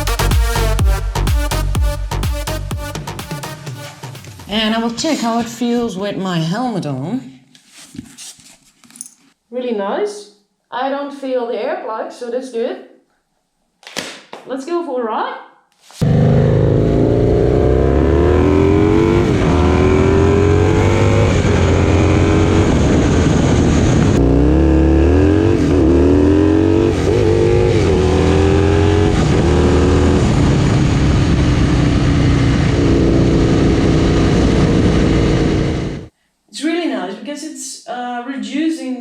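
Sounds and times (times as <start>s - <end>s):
motorcycle engine accelerating: 16.0s - 36.1s.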